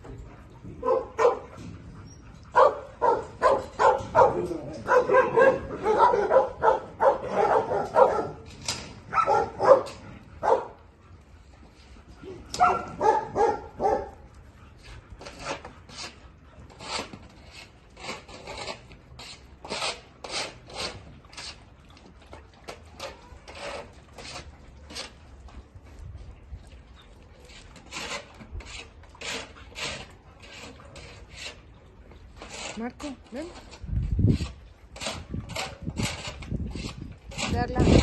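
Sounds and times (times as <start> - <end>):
dog panting hard: 0.4 - 4.4, 9.6 - 18.9
dogs barking: 0.8 - 8.5, 9.1 - 10.9, 12.2 - 14.4.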